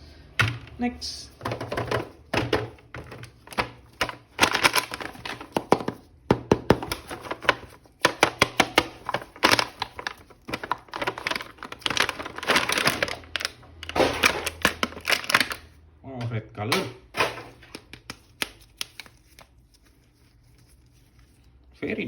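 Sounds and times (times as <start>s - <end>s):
plastic packaging crinkling: 1.7s - 6.1s, 6.7s - 15.8s, 17.2s - 21.8s.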